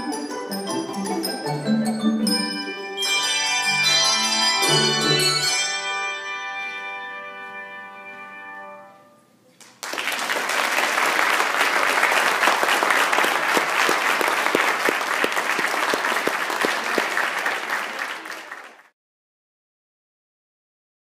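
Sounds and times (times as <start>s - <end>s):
audience applauding: 9.6s - 18.9s.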